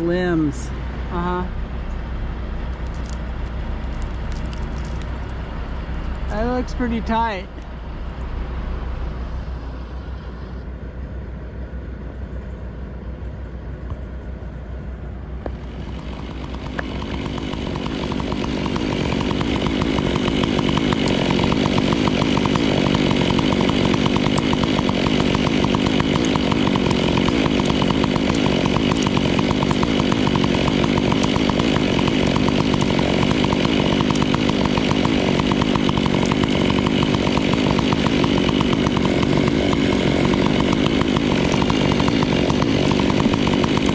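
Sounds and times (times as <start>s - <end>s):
low machine hum: 0.0s - 38.3s
chainsaw cutting: 2.6s - 8.3s, 15.4s - 43.9s.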